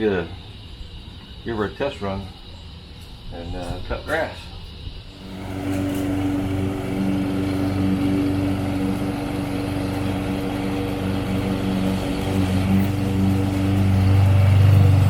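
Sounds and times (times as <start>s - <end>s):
lawn mower engine running: 5.1s - 15.0s.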